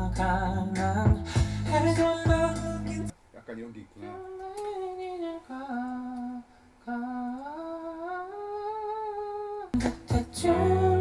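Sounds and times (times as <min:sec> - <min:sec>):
person humming a slow melody: 0:04.1 - 0:11.0.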